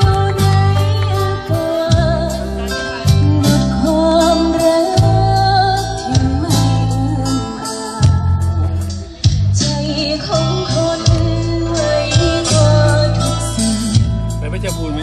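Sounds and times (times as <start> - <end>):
person singing: 0.0 - 9.0
bass line: 0.0 - 15.0.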